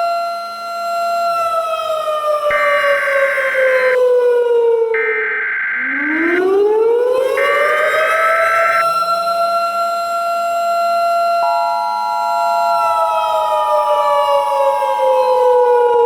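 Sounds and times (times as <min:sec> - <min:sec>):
warning siren winding: 0:02.5 - 0:04.0, 0:05.0 - 0:08.8
higher steady siren tone: 0:02.5 - 0:09.0, 0:11.4 - 0:16.0.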